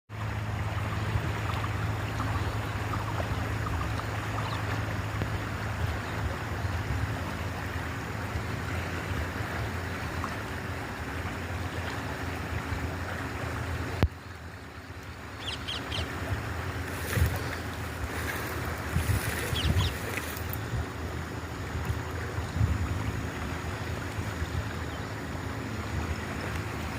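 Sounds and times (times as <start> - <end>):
river rushing: 0.1 - 26.9
wind buffeting microphone: 15.4 - 25.0.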